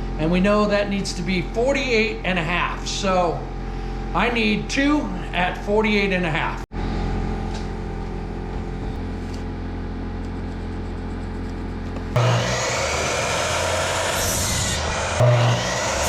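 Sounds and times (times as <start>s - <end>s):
saw motor hum: 7.9s - 16.0s
saw blade cutting wood: 10.6s - 16.0s.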